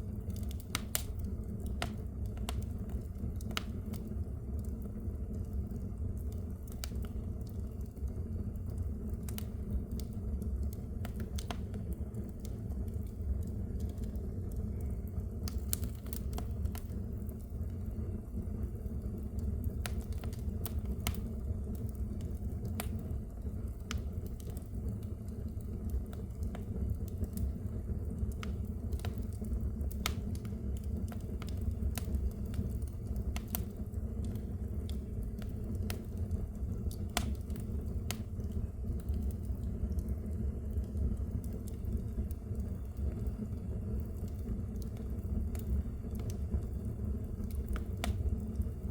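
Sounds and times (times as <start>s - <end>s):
fire crackling in fireplace: 0.0s - 48.9s.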